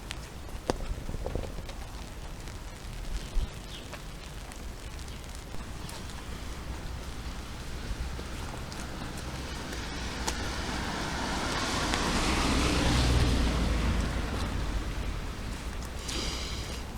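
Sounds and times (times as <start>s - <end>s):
rain falling: 0.0s - 16.9s
low rumble: 5.4s - 11.3s.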